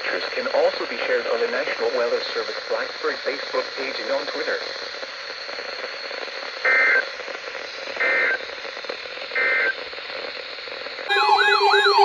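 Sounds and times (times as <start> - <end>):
steady radio hiss: 0.0 - 9.3
digital data bursts: 11.1 - 12.0.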